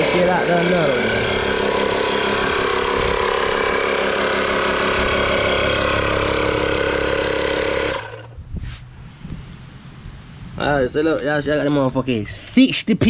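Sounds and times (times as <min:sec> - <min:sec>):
air compressor running: 0:00.0 - 0:08.5.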